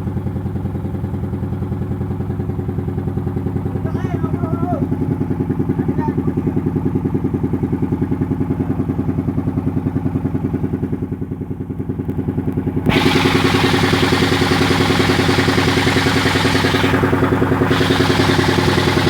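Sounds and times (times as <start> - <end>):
engine pulsing beat: 12.9 - 19.0.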